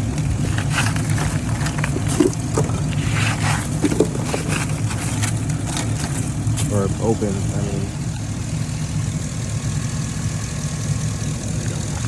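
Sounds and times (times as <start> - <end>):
vehicle engine idling: 0.0 - 12.0
short scrapes and knocks: 0.4 - 6.8.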